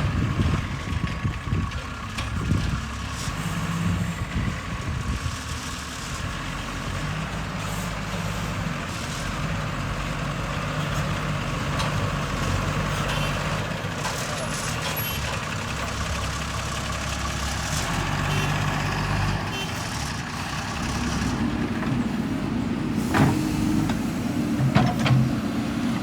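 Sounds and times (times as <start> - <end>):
diesel engine droning: 0.0 - 26.0.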